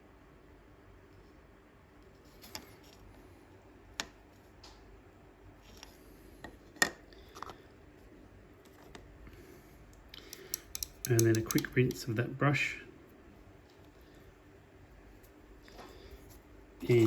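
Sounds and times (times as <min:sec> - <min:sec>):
faint steady background noise: 0:00.0 - 0:17.0
small objects clicking on a desk: 0:10.2 - 0:12.1.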